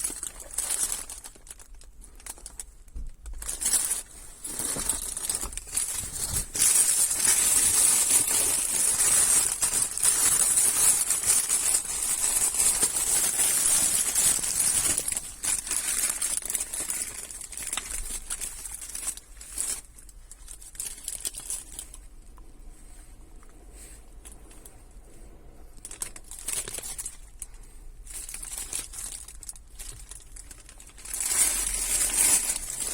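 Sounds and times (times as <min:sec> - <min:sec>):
rustling and crinkling handling noise: 0:00.0 - 0:32.9.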